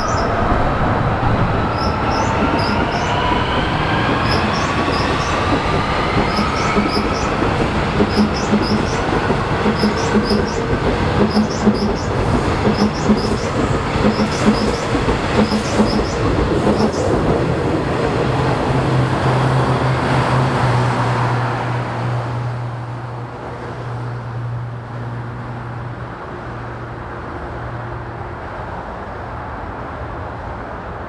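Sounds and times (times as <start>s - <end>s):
electric train hum: 0.0s - 31.0s
train wheels clacking over rail joints: 1.9s - 17.6s.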